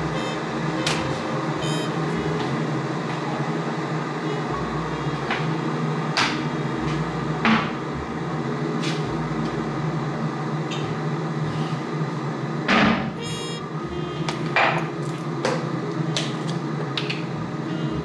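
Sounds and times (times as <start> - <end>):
machine hum: 0.0 - 18.0.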